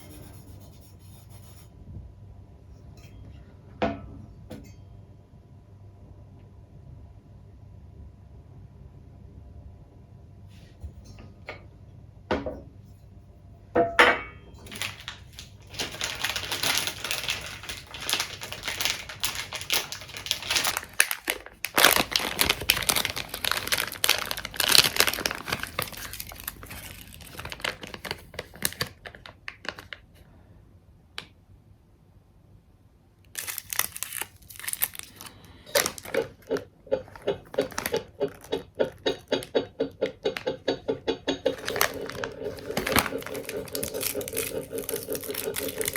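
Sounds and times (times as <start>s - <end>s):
packaging crinkling and tearing: 14.7s - 30.1s, 33.3s - 39.5s, 41.4s - 45.9s.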